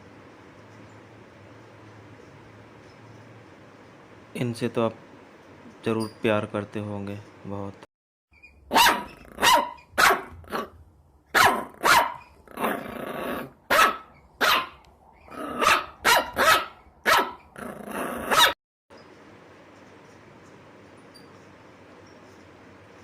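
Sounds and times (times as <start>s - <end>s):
dog barking: 8.7s - 12.8s, 13.7s - 17.4s, 18.3s - 18.6s.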